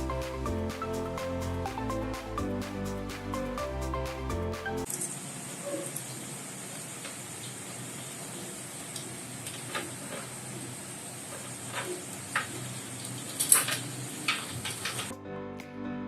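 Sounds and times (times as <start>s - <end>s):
background music: 0.0s - 4.9s, 15.1s - 16.0s
cables clicking and rustling: 11.3s - 15.1s.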